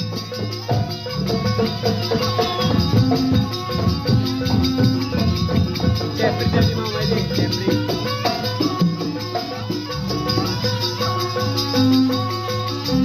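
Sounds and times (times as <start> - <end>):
gamelan ensemble playing: 0.0 - 13.0.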